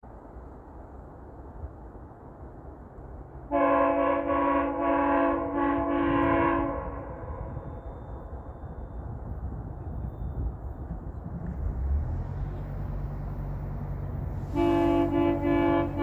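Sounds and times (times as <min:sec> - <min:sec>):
low train rumble: 0:00.0 - 0:16.0
train air horn chord: 0:03.5 - 0:07.6, 0:14.4 - 0:16.0.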